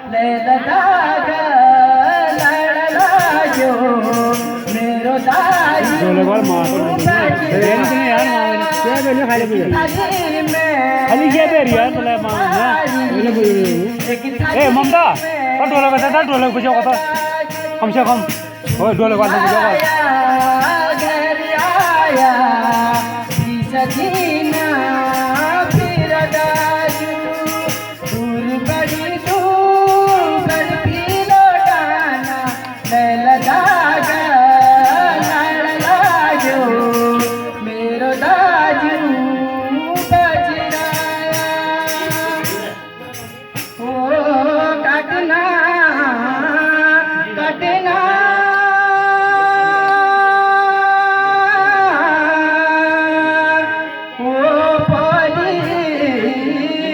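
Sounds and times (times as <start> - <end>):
person singing folk song: 0.0 - 56.9
rattling hand percussion: 2.1 - 39.1, 39.9 - 44.1.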